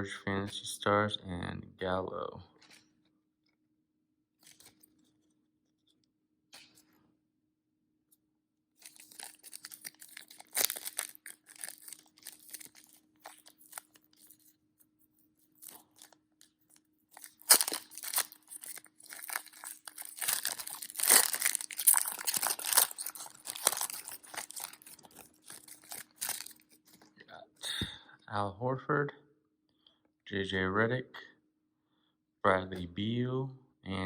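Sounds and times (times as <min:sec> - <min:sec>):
plastic wrapper crinkling and tearing: 0:04.4 - 0:05.2, 0:08.8 - 0:14.6, 0:15.3 - 0:27.1.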